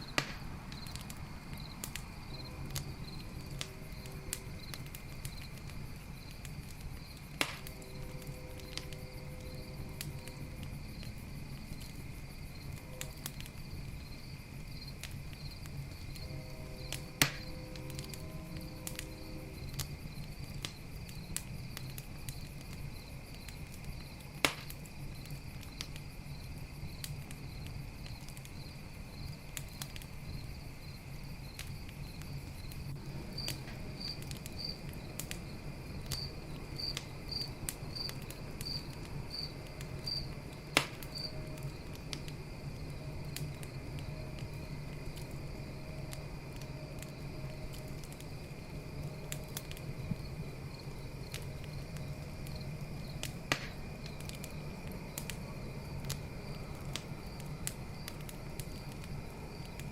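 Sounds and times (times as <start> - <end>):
campfire crackling and popping: 0.0 - 59.9
crickets chirping: 0.0 - 59.9.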